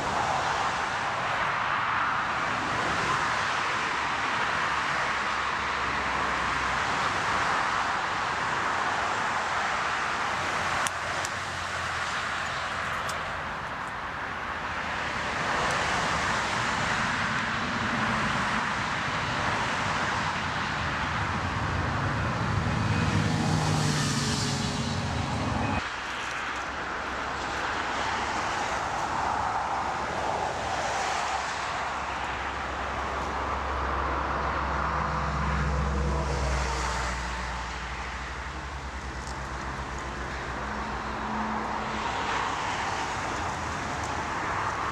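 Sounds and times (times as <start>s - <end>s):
jet engine rush: 16.6s - 26.1s.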